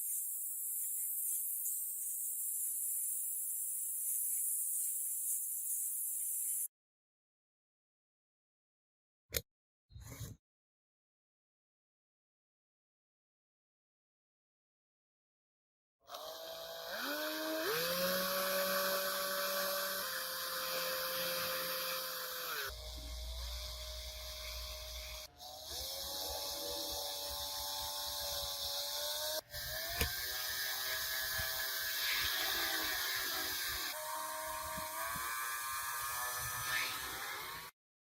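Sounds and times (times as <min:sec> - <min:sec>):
power tool whining: 0:16.1 - 0:37.7.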